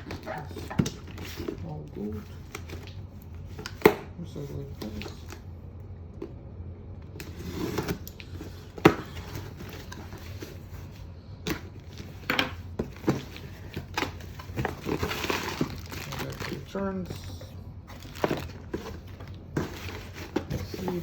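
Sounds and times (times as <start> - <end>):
packaging rustling: 0.0 - 3.8, 7.2 - 21.0.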